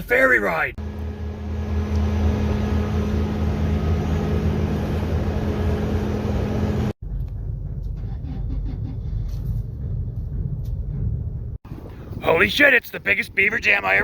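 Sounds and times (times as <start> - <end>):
ferry engine droning: 0.8 - 8.4
low rumble: 0.8 - 12.2.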